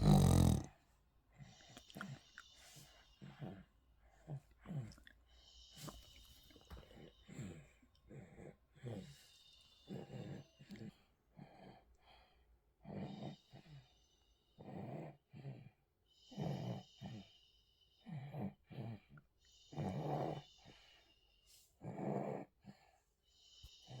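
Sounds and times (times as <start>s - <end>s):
baby snoring: 0.0s - 0.7s.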